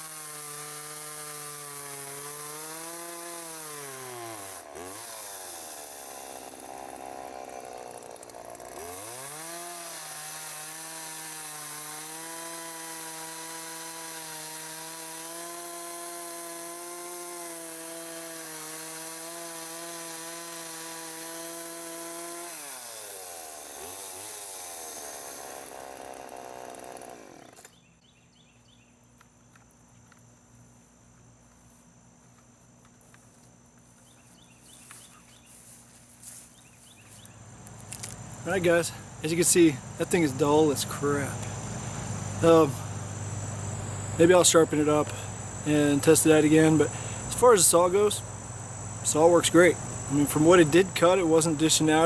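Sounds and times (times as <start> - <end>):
chainsaw cutting wood: 0.0 - 27.8, 37.2 - 52.0
faint insects chirping: 27.2 - 52.0.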